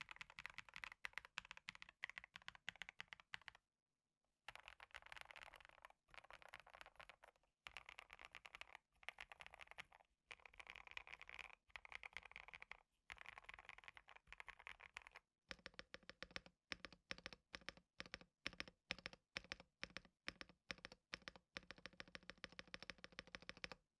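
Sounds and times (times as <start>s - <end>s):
typing on mechanical keyboard: 0.0s - 3.6s, 4.5s - 23.8s.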